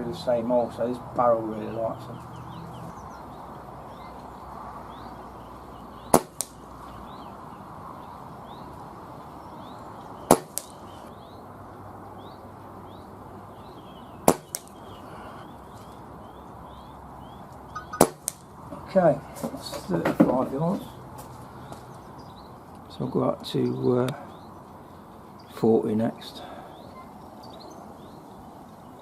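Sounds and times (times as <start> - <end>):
air rifle shot crack: 6.1 - 6.6, 10.3 - 10.8, 14.3 - 14.8, 18.0 - 18.5
pellet smacking target: 6.1 - 6.6, 10.3 - 10.8, 14.2 - 14.8, 17.9 - 18.5
faint bird chirps: 13.6 - 18.1, 26.6 - 28.5.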